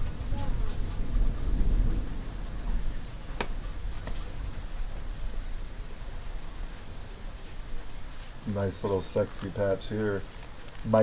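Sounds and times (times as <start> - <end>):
low rumble of thunder: 0.0 - 8.0
steady rain falling: 0.0 - 11.0.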